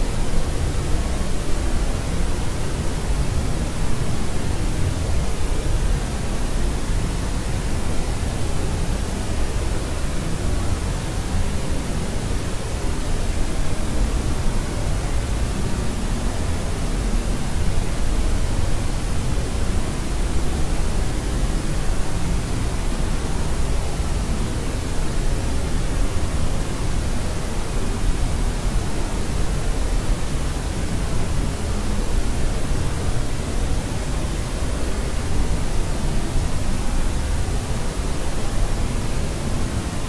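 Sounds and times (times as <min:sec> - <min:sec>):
pink noise hiss: 0:00.0 - 0:40.0.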